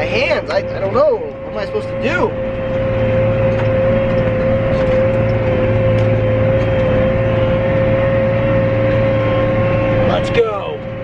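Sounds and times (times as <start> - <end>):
constant machine whine: 0.0 - 11.0
harvest machinery engine hum: 0.0 - 11.0.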